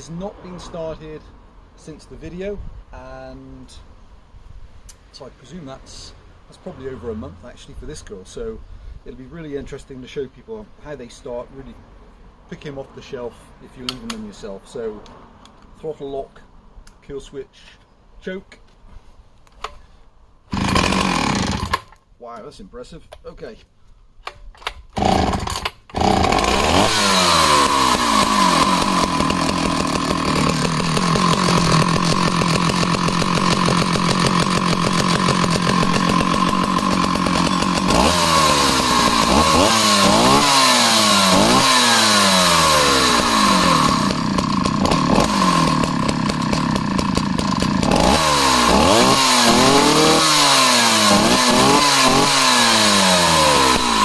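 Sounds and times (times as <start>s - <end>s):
chainsaw throttle blips: 20.5s - 21.9s, 25.0s - 54.0s
chainsaw starting and idling: 20.5s - 22.0s, 24.6s - 54.0s.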